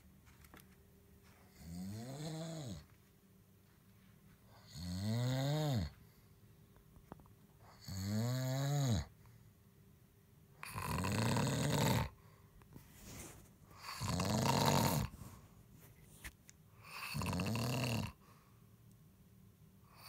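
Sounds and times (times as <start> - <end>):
man snoring loudly: 1.6 - 2.8, 4.6 - 5.9, 7.8 - 9.1, 10.6 - 12.2, 13.8 - 15.1, 16.8 - 18.2.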